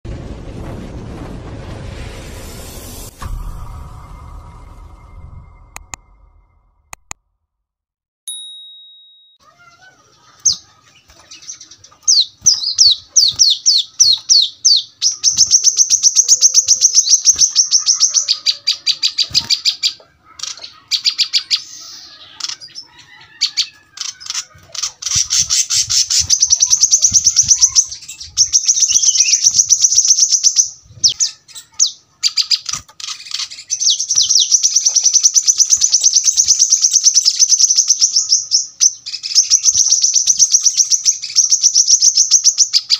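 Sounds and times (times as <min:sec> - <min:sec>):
sunbird singing rapid high notes: 0:25.2 - 0:32.6.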